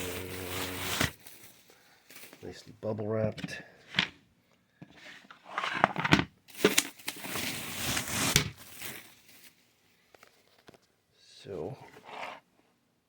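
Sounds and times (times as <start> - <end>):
plastic packaging handled: 0.0 - 2.7, 5.2 - 10.9.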